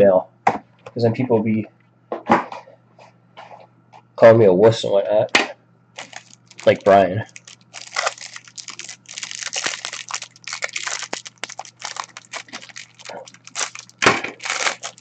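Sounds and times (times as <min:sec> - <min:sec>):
plastic wrapping crinkling: 0:06.0 - 0:15.0.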